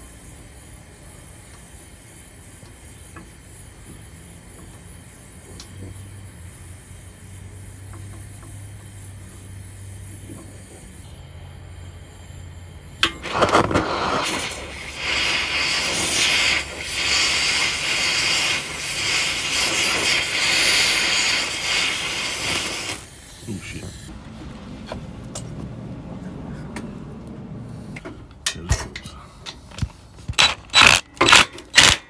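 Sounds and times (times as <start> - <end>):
torch flame hissing: 0.0 - 24.2
welding torch lighting pop: 13.0 - 23.1, 29.8 - 32.0.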